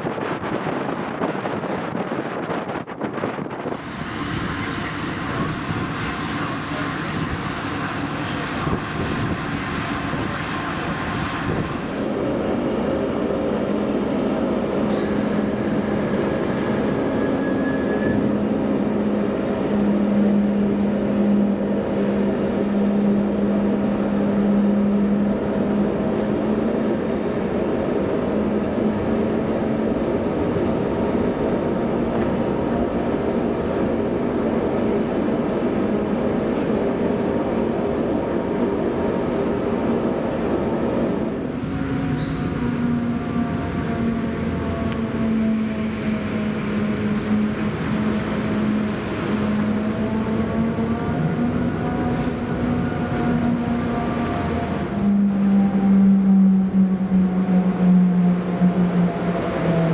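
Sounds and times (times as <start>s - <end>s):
wind noise: 0.0s - 55.8s
ferry engine drone: 3.7s - 59.9s.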